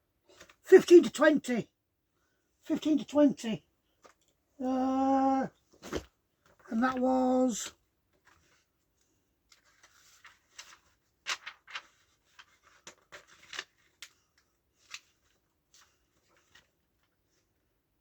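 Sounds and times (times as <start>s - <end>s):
paper pages rustling: 5.7s - 17.5s.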